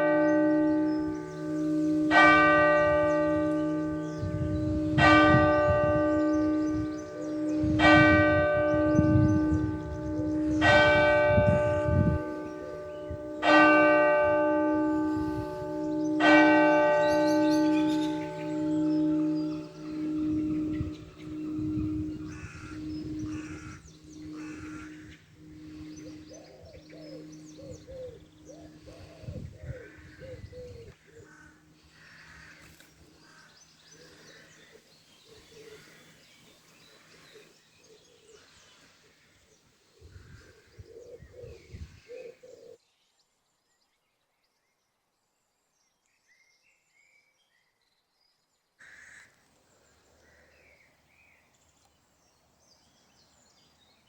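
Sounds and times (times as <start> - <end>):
church bell humming: 0.0 - 34.8
small birds chirping: 0.0 - 42.8.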